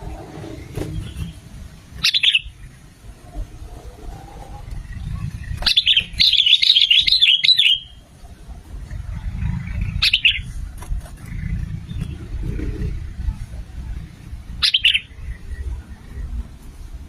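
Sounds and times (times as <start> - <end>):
low background rumble: 0.0 - 17.0
bulbul singing: 0.7 - 2.9, 4.6 - 10.7, 14.4 - 16.2.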